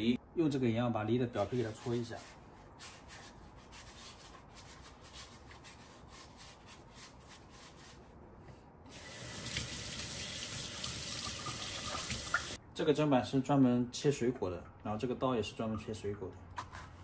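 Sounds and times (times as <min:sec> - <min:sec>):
hand rubbing pear skin: 0:01.4 - 0:08.2
tap water running into sink: 0:08.9 - 0:12.6.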